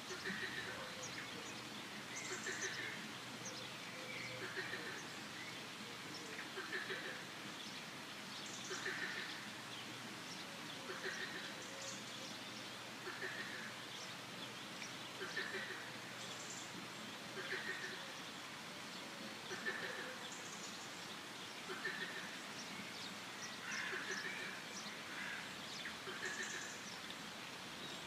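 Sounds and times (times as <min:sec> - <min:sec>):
frogs croaking: 0:00.0 - 0:01.2, 0:01.9 - 0:05.3, 0:06.4 - 0:07.4, 0:08.6 - 0:09.6, 0:10.8 - 0:11.8, 0:12.9 - 0:13.9, 0:15.2 - 0:16.7, 0:17.3 - 0:18.2, 0:23.5 - 0:26.8
birds chirping: 0:00.0 - 0:27.1
steady background hiss: 0:00.0 - 0:28.0.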